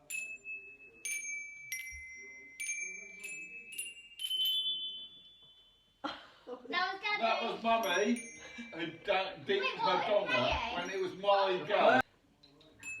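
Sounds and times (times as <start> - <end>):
small handbells ringing: 0.0 - 6.0, 7.8 - 11.1, 12.8 - 13.0.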